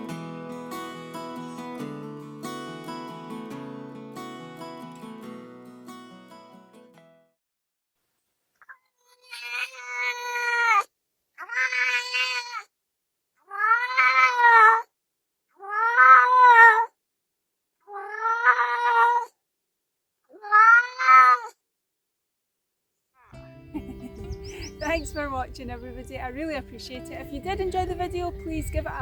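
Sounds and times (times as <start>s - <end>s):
cat meowing: 9.1s - 12.7s, 13.5s - 14.8s, 15.6s - 16.9s, 17.9s - 19.3s, 20.3s - 21.5s.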